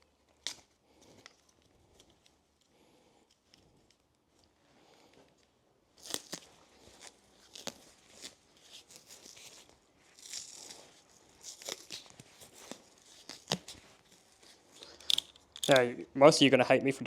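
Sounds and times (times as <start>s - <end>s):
metal tools clicking and knocking: 15.0s - 15.9s.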